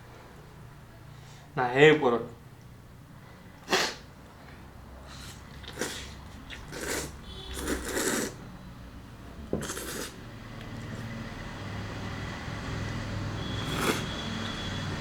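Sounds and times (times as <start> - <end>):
breathy mouth sounds: 9.6 - 11.1.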